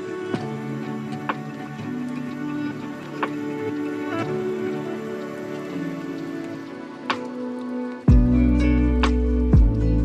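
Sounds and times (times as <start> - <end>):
beat-driven music with deep bass: 8.1 - 10.0.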